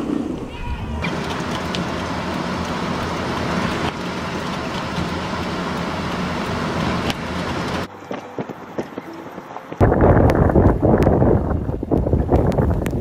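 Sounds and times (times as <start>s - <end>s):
low engine hum: 0.0s - 7.9s.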